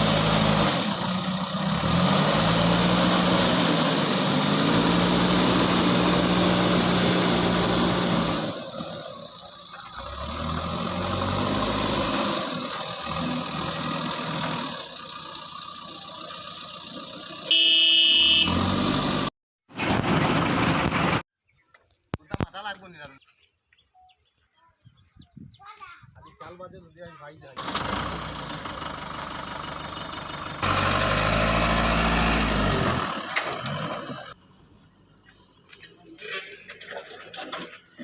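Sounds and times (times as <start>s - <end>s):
diesel engine under load: 0.0s - 21.2s, 27.6s - 38.0s
vehicle horn: 17.5s - 18.7s.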